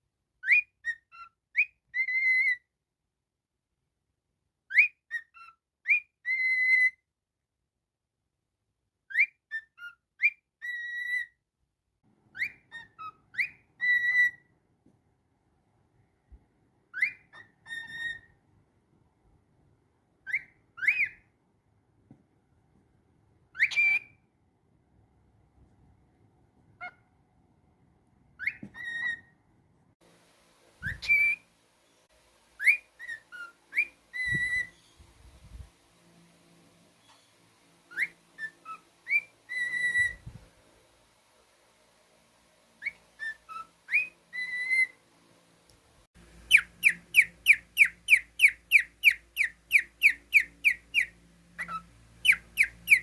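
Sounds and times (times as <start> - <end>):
cockatiel whistling: 0.4 - 2.7, 4.6 - 7.0, 9.1 - 11.4, 12.3 - 14.5, 16.9 - 18.4, 20.2 - 21.3, 23.5 - 24.3, 26.8 - 27.1, 28.4 - 29.4, 30.8 - 31.5, 32.6 - 35.1, 37.9 - 40.4, 42.8 - 45.0, 46.4 - 53.0.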